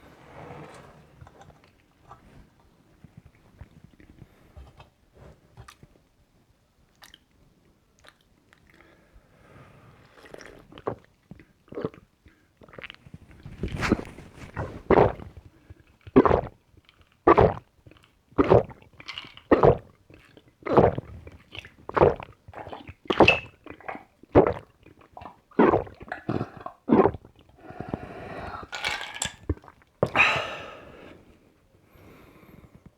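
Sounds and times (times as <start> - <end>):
person gulping water: 10.2 - 31.0
breathy exhale: 27.6 - 28.7, 30.2 - 31.3.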